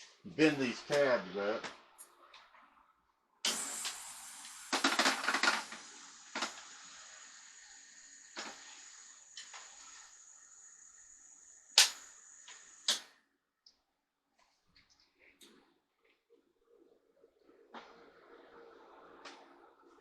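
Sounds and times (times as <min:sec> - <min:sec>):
steady high hiss: 0:00.0 - 0:01.7, 0:03.4 - 0:13.1.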